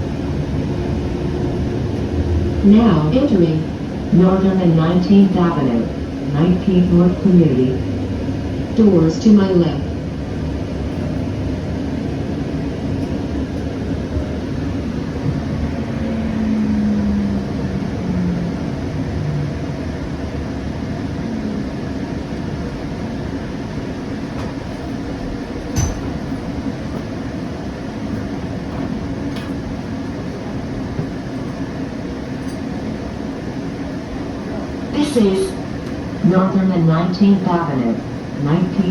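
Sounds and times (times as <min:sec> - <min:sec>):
train motor tone: 0:00.0 - 0:27.2
light rail wheels rumbling: 0:00.0 - 0:38.9.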